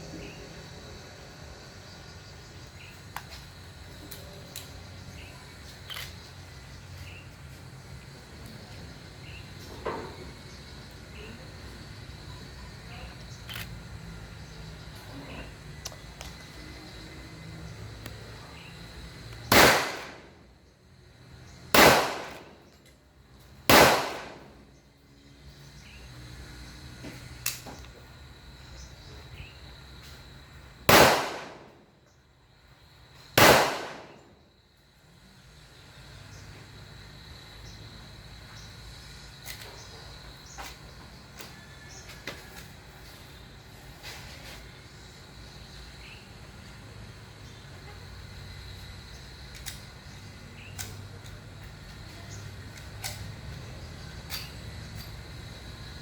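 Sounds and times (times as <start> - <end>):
loud gunshots: 19.5 - 20.3, 21.8 - 22.6, 23.7 - 24.6, 30.9 - 31.8, 33.4 - 34.3.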